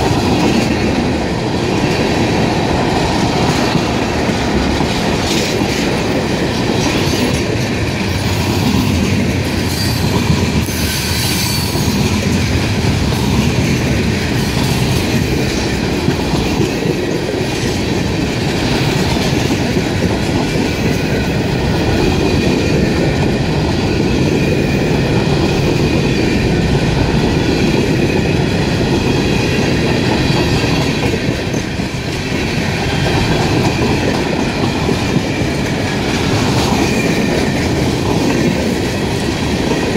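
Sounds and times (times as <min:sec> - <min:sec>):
freight train rumbling: 0:00.0 - 0:39.9
wheel squeal: 0:09.7 - 0:12.0.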